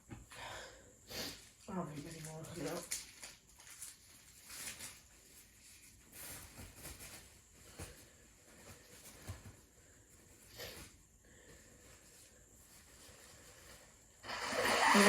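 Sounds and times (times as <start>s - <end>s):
paper tissue rustling: 2.0s - 14.2s
soft breaths: 7.5s - 14.2s.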